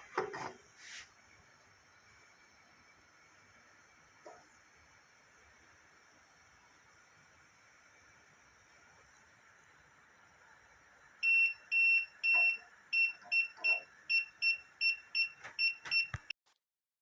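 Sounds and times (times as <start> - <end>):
gas detector alarm beeping: 11.2 - 16.3.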